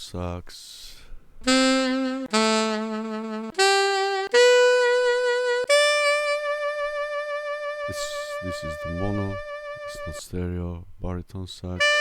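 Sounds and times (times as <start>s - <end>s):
sampled alto saxophone notes: 1.4s - 10.2s, 11.8s - 12.0s.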